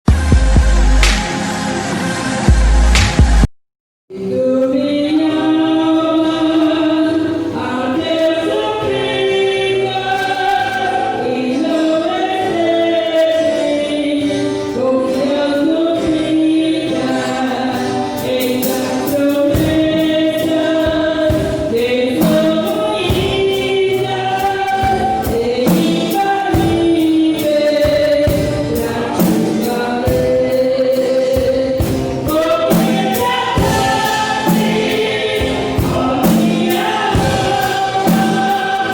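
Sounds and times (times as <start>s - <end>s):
drum and cymbal hits: 0.1s - 3.5s, 24.3s - 38.9s
choir singing: 4.1s - 38.9s.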